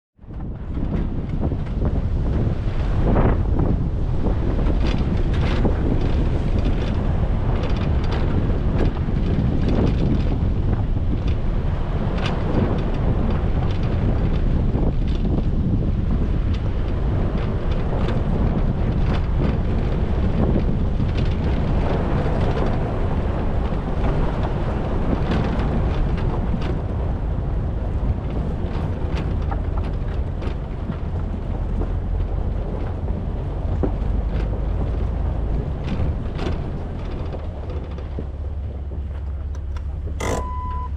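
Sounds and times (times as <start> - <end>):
engine and tyres rumbling: 0.2 - 40.9
wind buffeting microphone: 0.2 - 40.9
sharp clicks and knocks: 18.9 - 40.9.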